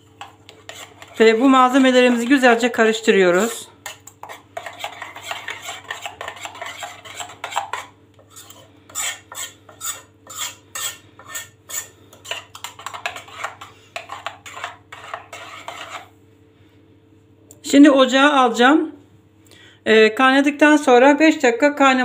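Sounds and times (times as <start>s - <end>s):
spoon stirring and clinking in pot: 0.0s - 16.1s.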